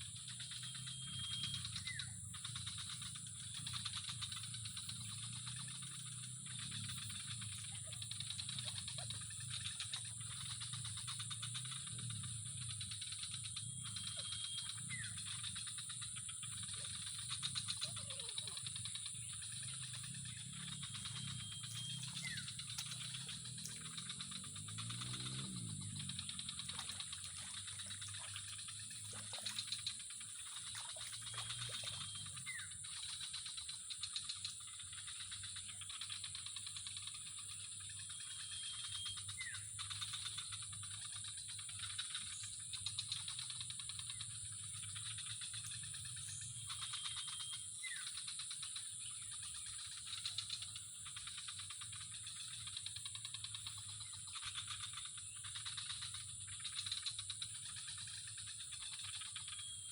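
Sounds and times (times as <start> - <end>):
high-pitched animal drone: 0.4 - 32.7.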